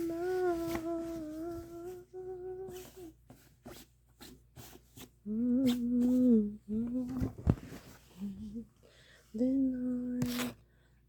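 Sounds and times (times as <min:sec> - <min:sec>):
woman humming: 0:00.0 - 0:03.2, 0:05.2 - 0:07.4, 0:09.4 - 0:10.6.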